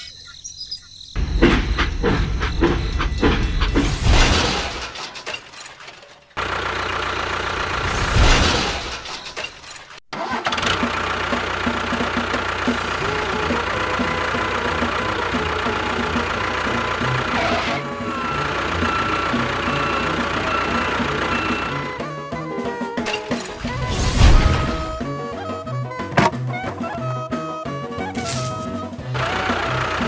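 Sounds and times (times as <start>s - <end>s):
motor running: 10.6s - 22.2s, 28.1s - 30.0s.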